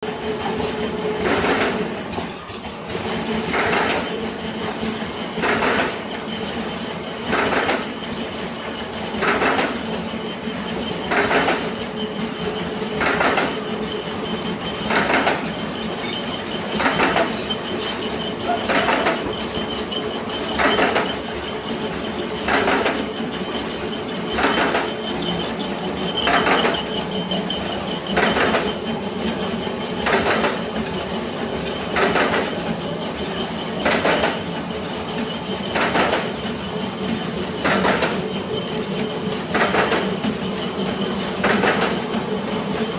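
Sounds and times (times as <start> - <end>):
sharp machine stroke: 10.9 - 32.4.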